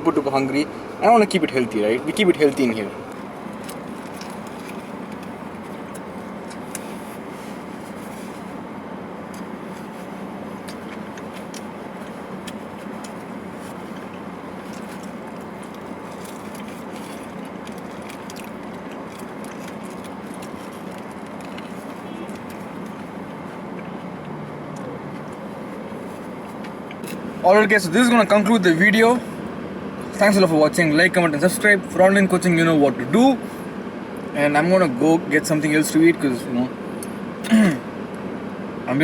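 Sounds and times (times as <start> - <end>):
steady background noise: 0.0 - 39.0
small clicks and crackles: 3.5 - 7.0, 9.3 - 23.1.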